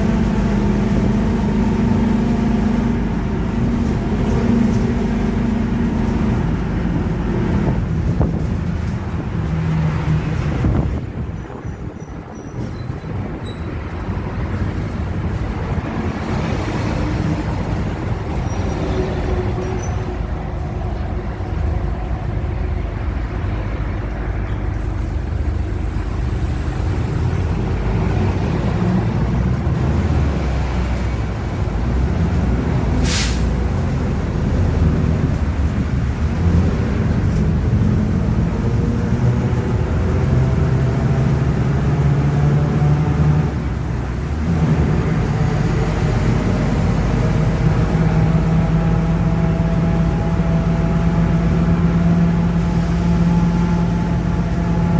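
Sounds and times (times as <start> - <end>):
bus diesel engine droning: 0.0 - 54.9
air hiss: 33.0 - 33.6.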